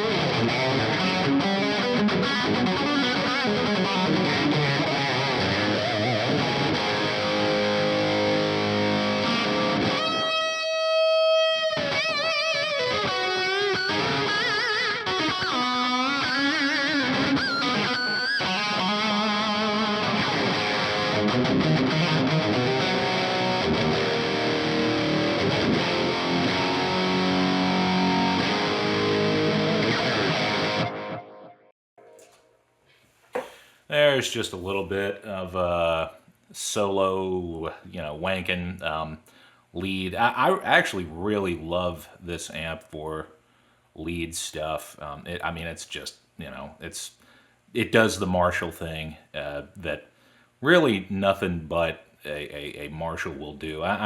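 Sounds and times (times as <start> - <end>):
distorted electric guitar: 0.0 - 32.4.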